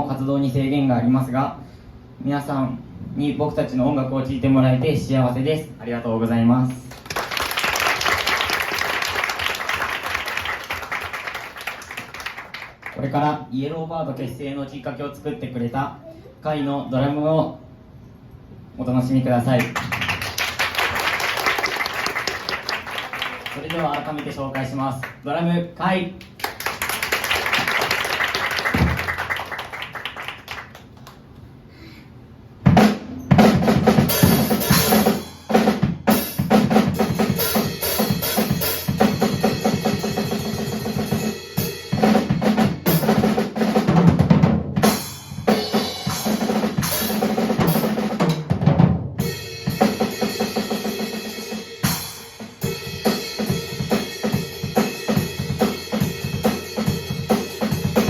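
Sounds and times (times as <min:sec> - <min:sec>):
applause: 0:06.8 - 0:13.1, 0:19.6 - 0:25.2, 0:26.2 - 0:31.3
drum kit playing: 0:26.9 - 0:30.4, 0:32.6 - 0:58.0.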